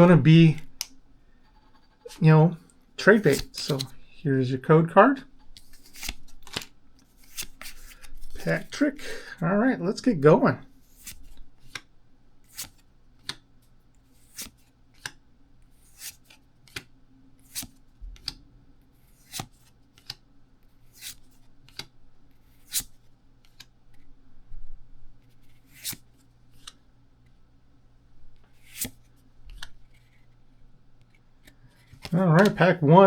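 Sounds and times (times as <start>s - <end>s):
cards rustling: 3.0s - 4.2s, 5.4s - 9.0s, 10.8s - 13.4s, 14.0s - 18.4s, 19.0s - 24.0s, 25.2s - 26.8s, 28.4s - 32.8s
trading cards snapping and flicking: 3.2s - 3.9s, 5.6s - 8.0s.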